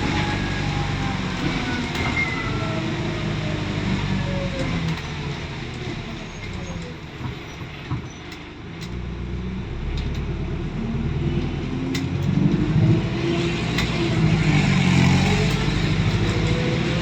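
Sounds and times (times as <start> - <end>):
diesel bus engine accelerating: 0.0 - 17.0.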